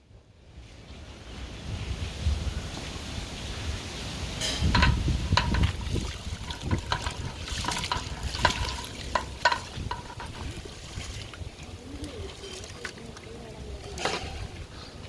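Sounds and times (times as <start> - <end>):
metal utensil knocking on pot: 4.4 - 10.8.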